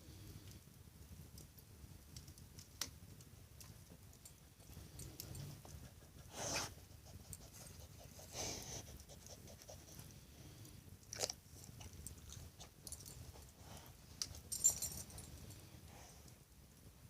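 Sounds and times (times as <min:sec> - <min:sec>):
wood fire crackling: 0:00.0 - 0:09.1, 0:10.1 - 0:16.9
low steady hiss: 0:00.0 - 0:17.0.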